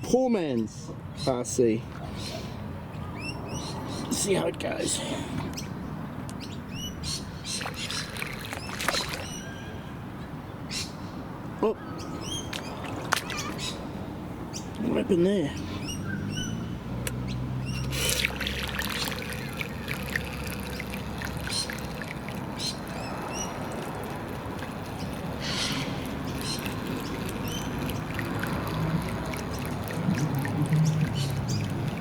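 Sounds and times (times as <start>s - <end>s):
birds chirping: 0.8s - 32.0s
water trickling: 7.4s - 9.5s, 17.6s - 32.0s.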